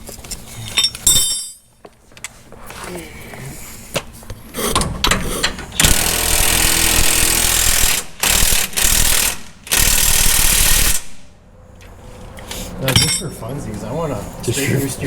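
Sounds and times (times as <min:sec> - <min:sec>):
power tool running in bursts: 0:05.8 - 0:11.0.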